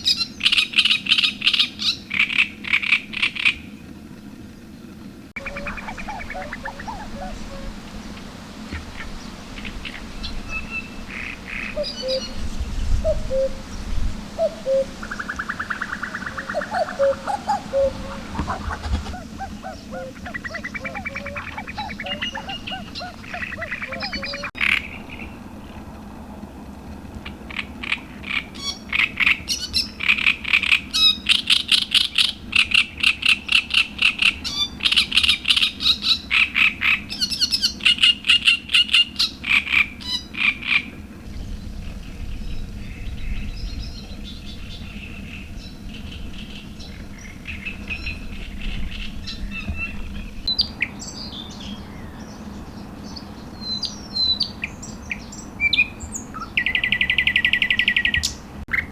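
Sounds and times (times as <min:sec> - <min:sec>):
rapid sharp animal calls: 0:05.4 - 0:24.9
faint bird chirps: 0:05.4 - 0:25.2
low rumble: 0:41.2 - 0:50.6.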